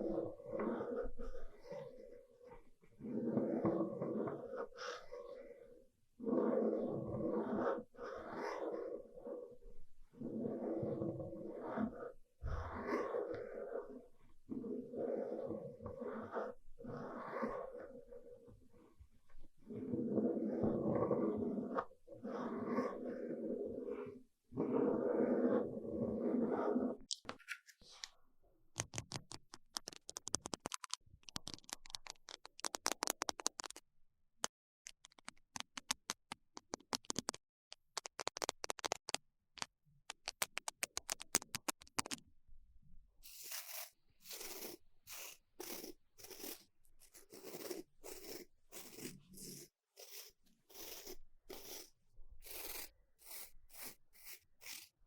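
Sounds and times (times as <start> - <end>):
close scratching and scraping: 43.2 - 55.0.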